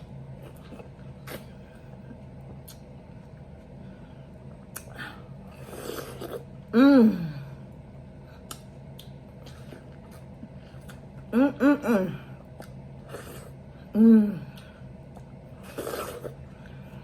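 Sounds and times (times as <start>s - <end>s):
wet chewing and mouth clicks: 2.5s - 2.9s, 8.4s - 10.2s
person humming mmm: 5.9s - 7.6s, 11.3s - 12.4s, 13.9s - 14.8s.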